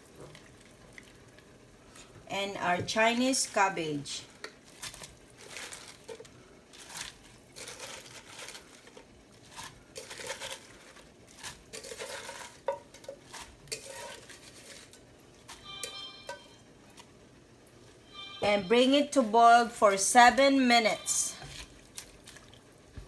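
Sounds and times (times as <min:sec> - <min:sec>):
cabbage leaves rustling: 0:04.6 - 0:15.7.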